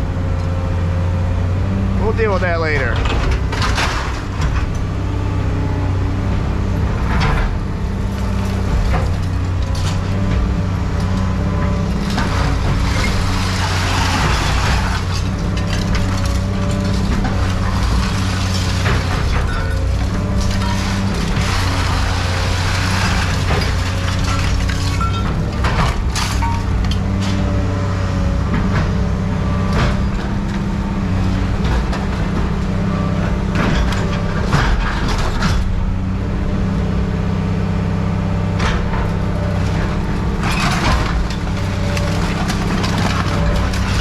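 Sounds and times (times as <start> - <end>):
engine humming: 0.0 - 44.0
scrap metal clanking: 6.8 - 26.8, 39.4 - 44.0.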